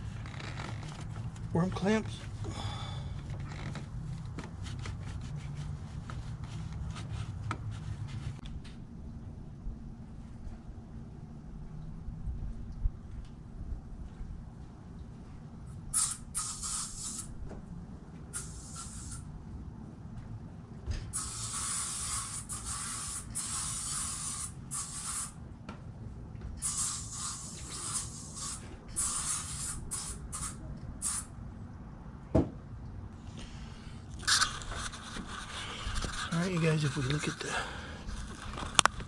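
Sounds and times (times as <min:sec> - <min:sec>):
hissing spray bursts: 0:15.9 - 0:17.3, 0:18.3 - 0:19.2, 0:21.1 - 0:25.4, 0:26.6 - 0:31.3.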